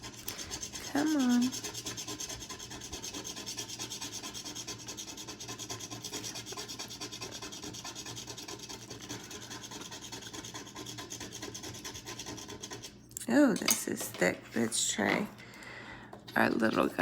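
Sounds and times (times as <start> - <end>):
lottery ticket being scratched: 0.0 - 13.0.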